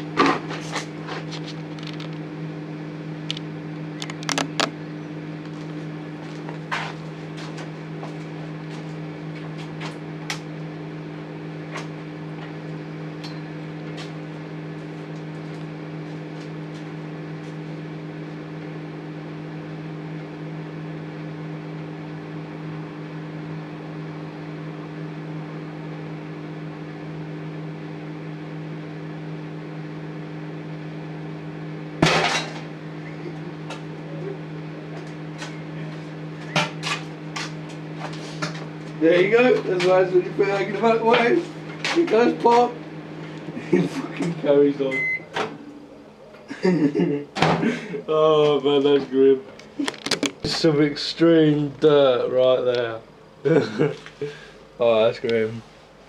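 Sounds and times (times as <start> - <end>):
microwave oven humming: 0.0 - 56.0
egg clicking and crackling: 4.0 - 4.7.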